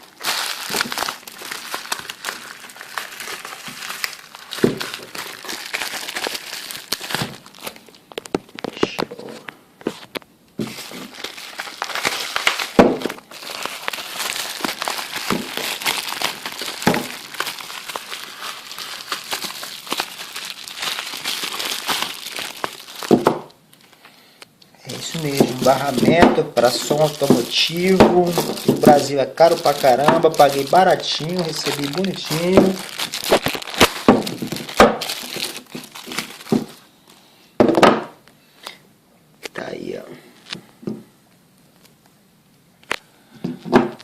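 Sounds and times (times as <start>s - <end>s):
packaging crinkling and rustling: 0.0s - 24.1s, 24.9s - 37.2s.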